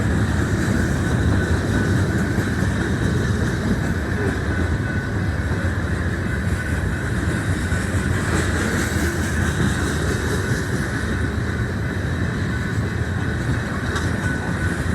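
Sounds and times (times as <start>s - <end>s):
freight train wheels rumbling: 0.0s - 14.9s.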